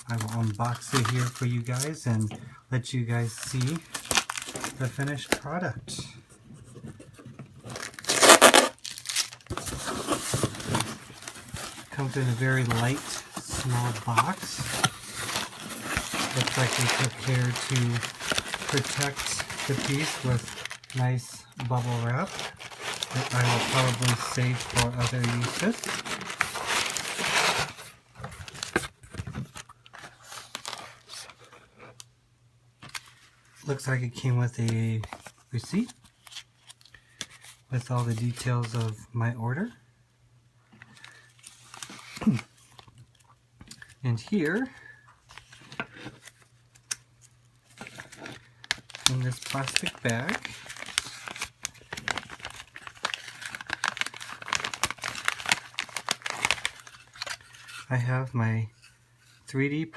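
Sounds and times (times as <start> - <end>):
bubble wrap rustling: 3.2 - 5.5, 7.6 - 31.4, 47.6 - 58.0
plastic bag crinkling: 7.8 - 27.9, 47.8 - 57.9.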